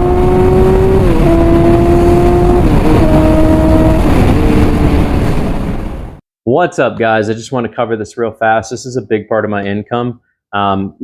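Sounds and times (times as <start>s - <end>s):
car engine accelerating: 0.0s - 6.0s.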